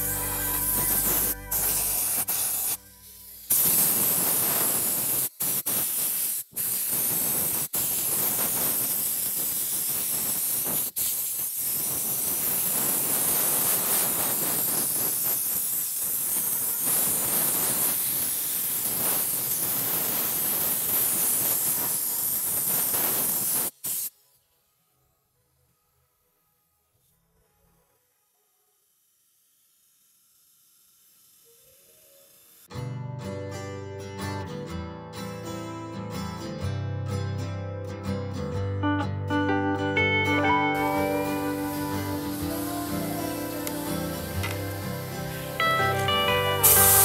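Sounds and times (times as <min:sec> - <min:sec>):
spray nozzle hissing: 0:00.0 - 0:24.2, 0:40.8 - 0:47.0.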